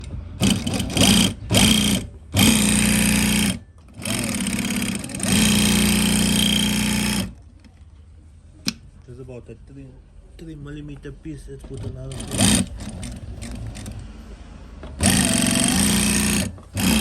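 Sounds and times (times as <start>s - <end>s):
industrial sewing machine stitching: 0.4s - 7.4s, 11.8s - 14.0s, 15.0s - 17.0s.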